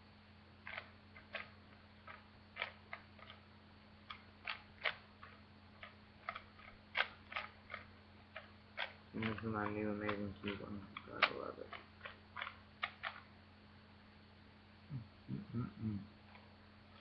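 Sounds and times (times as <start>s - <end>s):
faint low hum: 0.0s - 17.0s
speed cube clicking: 0.6s - 3.4s, 4.1s - 13.3s.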